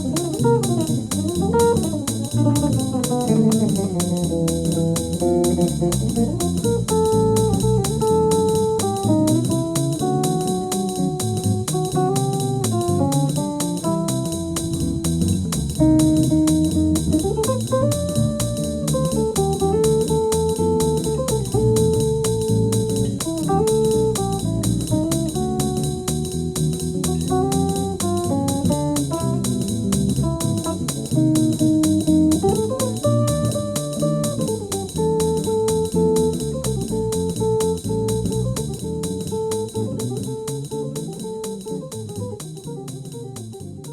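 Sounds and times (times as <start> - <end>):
instrumental melody with bass line: 0.0 - 43.9.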